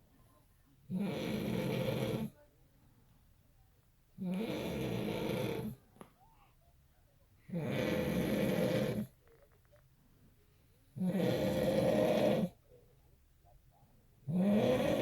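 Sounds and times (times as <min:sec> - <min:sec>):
man snoring: 0:00.9 - 0:02.3, 0:04.2 - 0:05.8, 0:07.5 - 0:09.1, 0:11.0 - 0:12.5, 0:14.3 - 0:15.0.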